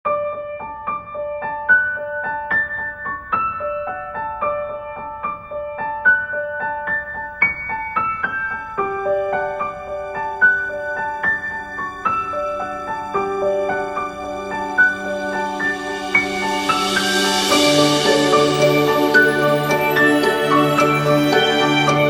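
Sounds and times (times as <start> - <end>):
gentle piano melody: 0.1 - 22.0.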